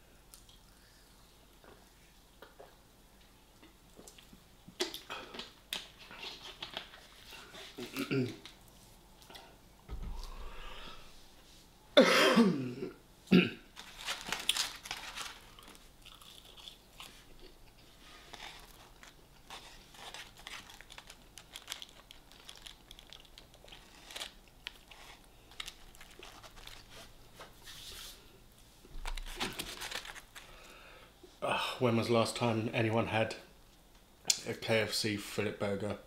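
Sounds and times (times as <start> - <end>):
person coughing: 7.8 - 8.4, 12.0 - 13.7
crunchy chewing: 13.8 - 27.1.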